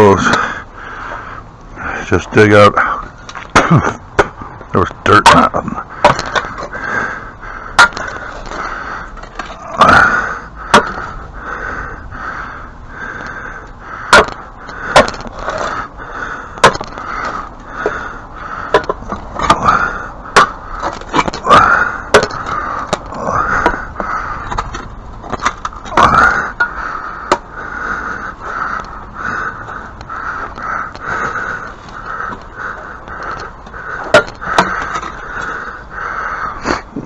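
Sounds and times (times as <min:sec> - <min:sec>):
tool scraping wood and dirt: 0:05.1 - 0:06.8, 0:14.1 - 0:15.9, 0:18.7 - 0:27.4, 0:30.4 - 0:35.6.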